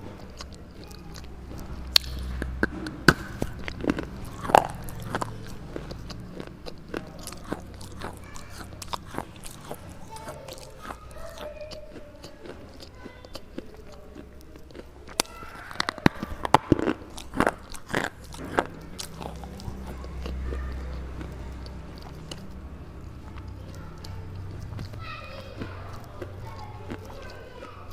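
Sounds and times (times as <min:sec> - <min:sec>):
slate being crunched by teeth: 0:00.0 - 0:22.5.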